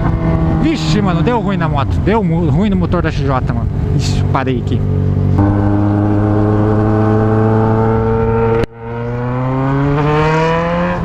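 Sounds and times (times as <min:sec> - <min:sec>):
motorcycle engine idling: 0:03.6 - 0:08.2.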